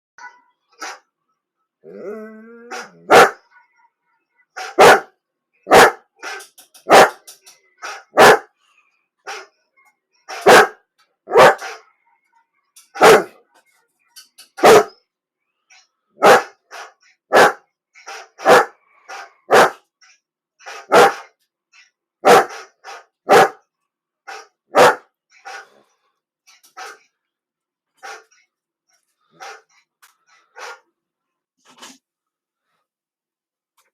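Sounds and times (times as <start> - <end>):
dog barking: 0.2 - 1.1, 2.6 - 3.9, 4.5 - 8.6, 10.3 - 11.9, 12.9 - 13.4, 14.6 - 15.0, 16.2 - 19.8, 20.6 - 21.3, 22.2 - 25.8, 29.3 - 29.7, 30.4 - 30.9.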